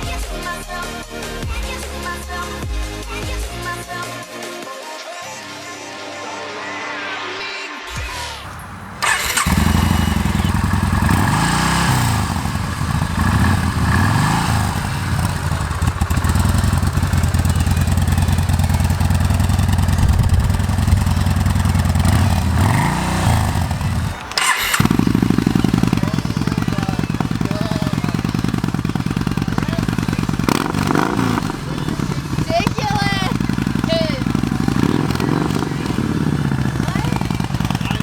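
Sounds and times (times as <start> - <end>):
motorcycle engine idling: 8.0 - 38.0.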